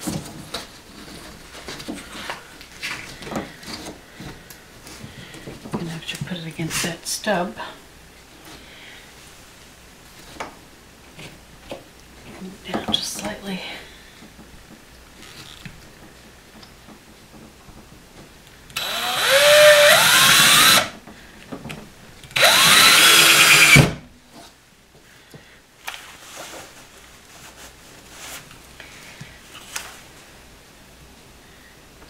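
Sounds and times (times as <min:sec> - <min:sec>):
power drill driving screws: 0:18.8 - 0:20.9, 0:22.3 - 0:24.0.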